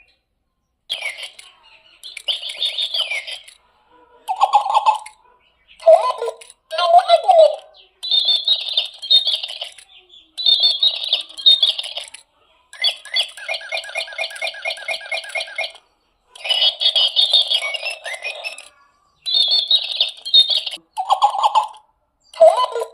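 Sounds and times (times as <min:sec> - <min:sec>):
birds chattering and calling: 0:00.0 - 0:12.2, 0:12.8 - 0:22.9
evenly repeated bird notes: 0:00.9 - 0:03.7, 0:04.3 - 0:12.2, 0:12.8 - 0:22.9.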